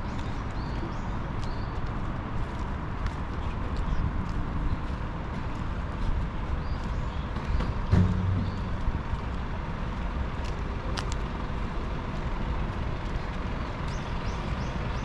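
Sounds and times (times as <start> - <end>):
road traffic rumble: 0.0 - 15.0
low hum and thump: 7.4 - 9.2.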